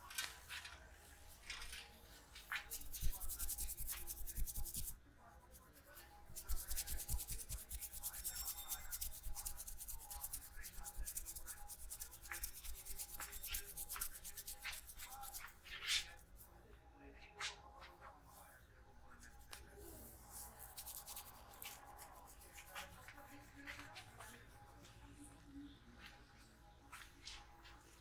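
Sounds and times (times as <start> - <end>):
hands rubbing over hair: 2.4 - 5.0, 5.9 - 16.3, 19.2 - 24.5.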